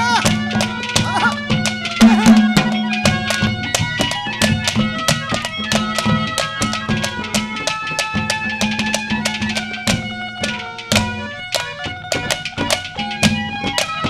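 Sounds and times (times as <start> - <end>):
fast steady drum beat: 0.0 - 7.6
held folk melody notes: 0.0 - 14.0.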